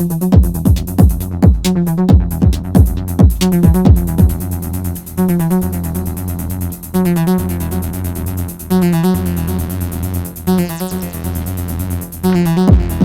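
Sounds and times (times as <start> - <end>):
hi-hat ticks: 0.0 - 13.0
steady bass line: 0.0 - 13.0.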